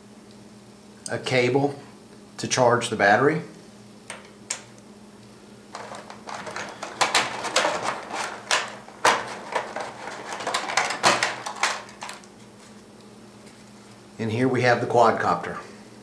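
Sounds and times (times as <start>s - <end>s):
clicks and knocks of handling: 5.7s - 12.8s
plastic packaging rustling: 5.7s - 14.0s.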